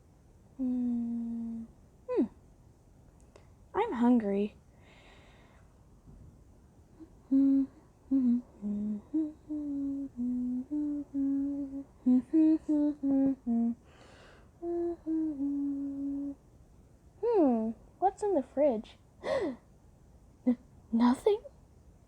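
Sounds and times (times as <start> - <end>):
person humming a tune: 0.6 - 2.4, 7.0 - 13.9, 14.6 - 16.4, 17.2 - 17.8.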